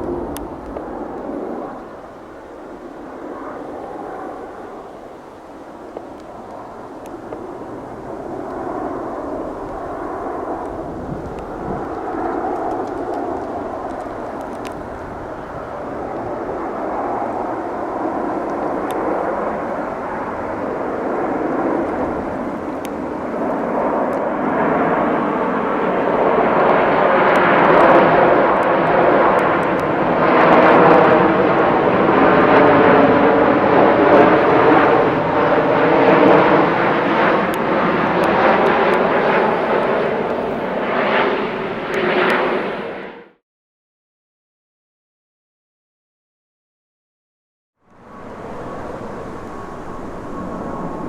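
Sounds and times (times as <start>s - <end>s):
jet airliner flying overhead: 0.0s - 43.4s, 47.8s - 51.0s.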